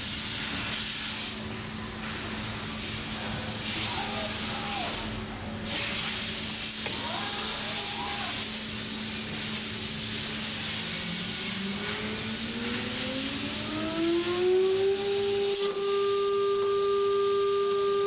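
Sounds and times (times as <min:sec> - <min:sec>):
cnc router hiss and hum: 0:00.0 - 0:18.0
motor whine changing pitch: 0:11.0 - 0:18.0.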